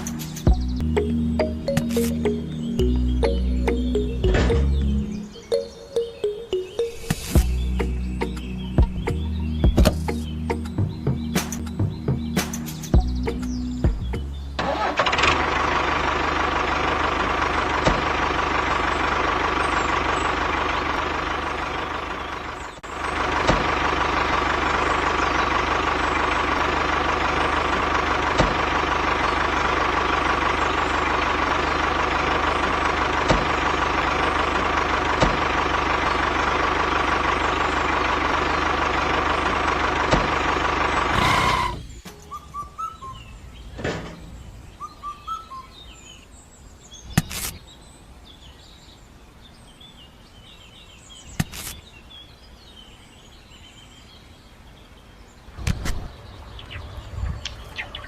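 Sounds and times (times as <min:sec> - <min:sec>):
faint bird chirps: 0:41.4 - 0:58.0.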